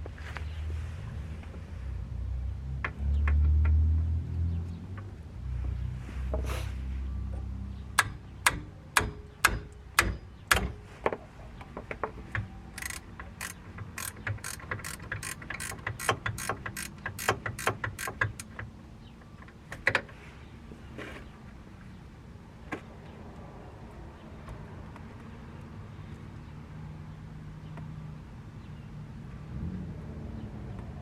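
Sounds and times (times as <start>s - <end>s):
hand ratchet clicking: 12.3s - 18.7s.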